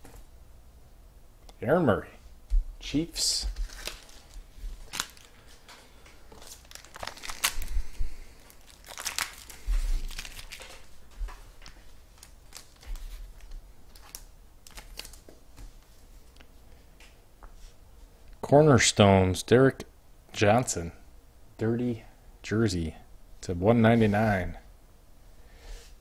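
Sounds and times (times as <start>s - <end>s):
card packaging crinkling: 3.5s - 5.7s, 6.3s - 15.4s.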